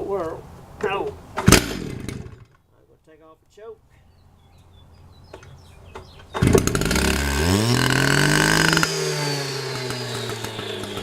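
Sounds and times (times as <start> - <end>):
cut-off saw engine starting and idling: 6.0 - 11.0.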